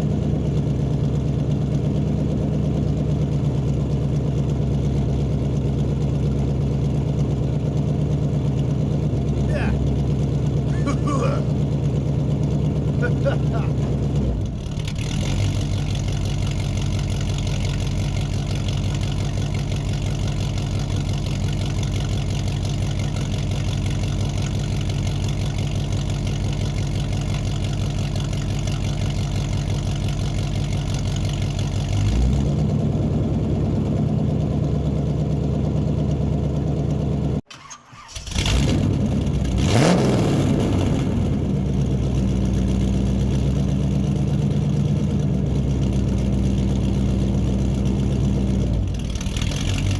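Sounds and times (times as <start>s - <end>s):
vehicle engine running: 0.0s - 49.9s
engine revving: 31.7s - 34.3s, 37.5s - 49.9s.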